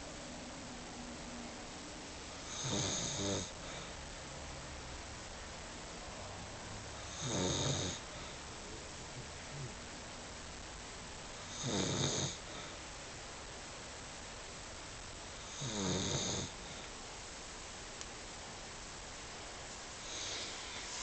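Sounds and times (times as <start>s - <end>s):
person snoring: 2.5s - 3.8s, 7.0s - 8.4s, 11.5s - 12.7s, 15.4s - 16.6s, 20.0s - 21.0s.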